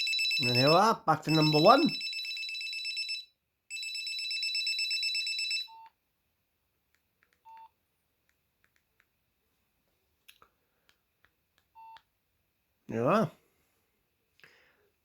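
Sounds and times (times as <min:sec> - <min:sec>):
phone ringtone electronic trill: 0:00.0 - 0:03.9
keypad beeps: 0:07.4 - 0:07.7.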